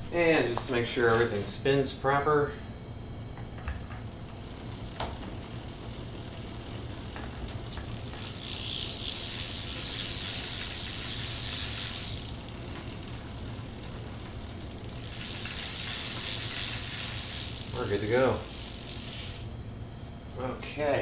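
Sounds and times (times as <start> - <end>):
bicycle freewheel ticking: 3.8 - 19.5.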